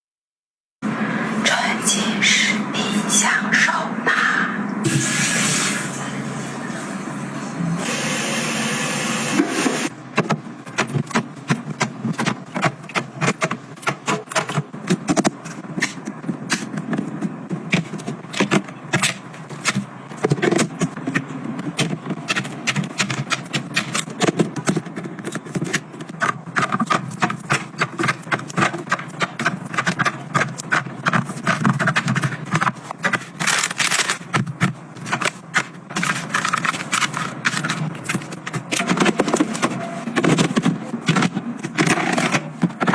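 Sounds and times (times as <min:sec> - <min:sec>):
items scraping: 0:09.3 - 0:42.9
household items clicking and rattling: 0:10.2 - 0:42.9.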